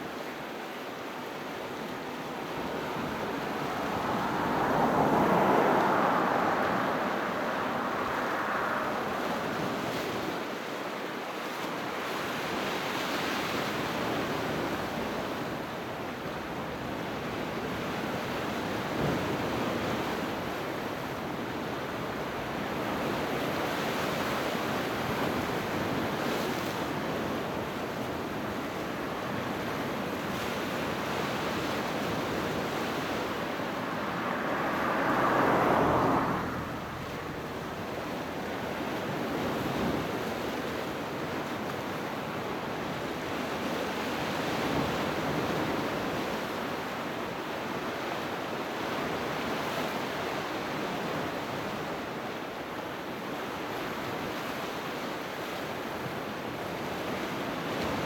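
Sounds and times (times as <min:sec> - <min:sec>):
sea waves breaking: 0:00.0 - 0:10.6, 0:31.0 - 0:40.0.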